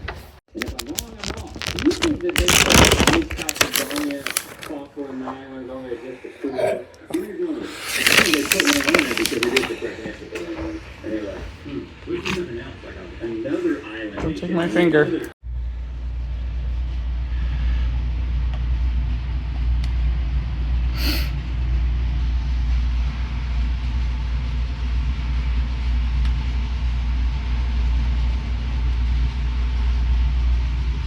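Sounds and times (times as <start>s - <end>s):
low rumble: 15.5s - 31.0s.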